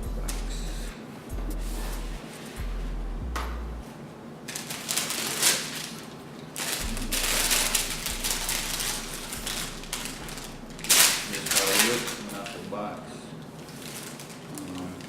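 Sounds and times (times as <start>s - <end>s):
packaging rustling and crinkling: 4.5s - 10.2s, 10.8s - 12.6s, 13.4s - 15.0s.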